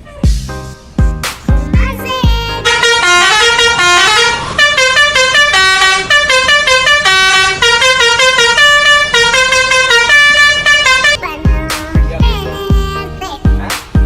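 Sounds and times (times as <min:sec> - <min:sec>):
multi-tone bus horn tune: 0:02.1 - 0:11.2.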